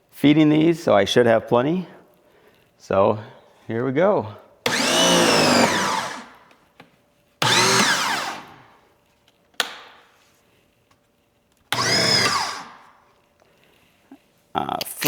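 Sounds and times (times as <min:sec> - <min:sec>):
pressure washers starting up: 0:04.7 - 0:06.3, 0:07.4 - 0:08.6.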